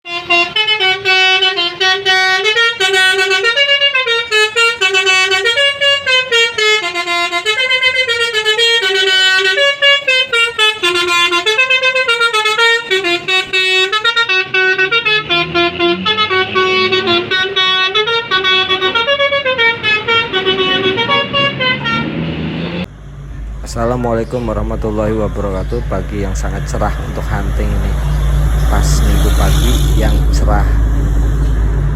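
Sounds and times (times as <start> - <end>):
musical bus horn melody: 0.0 - 22.9
low rumble: 22.7 - 31.9.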